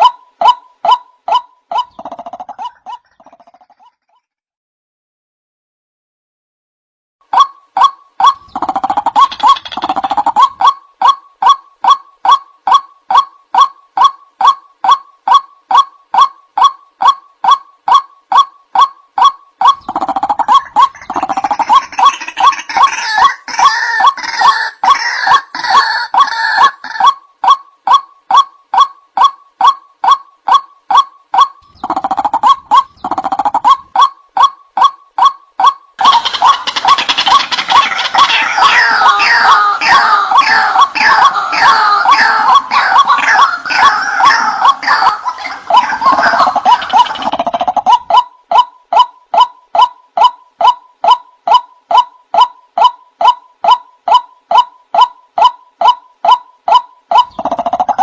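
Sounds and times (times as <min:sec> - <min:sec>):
waterhen calling: 0:00.0 - 0:04.2, 0:07.3 - 0:58.0
harsh bird chatter: 0:01.7 - 0:04.3, 0:08.2 - 0:10.8, 0:19.6 - 0:27.1, 0:31.6 - 0:34.5, 0:36.0 - 0:48.2.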